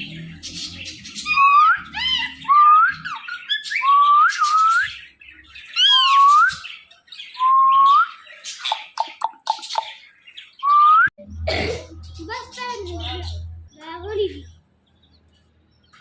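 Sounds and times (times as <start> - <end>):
parakeet whistling and squawking: 0.0 - 11.1.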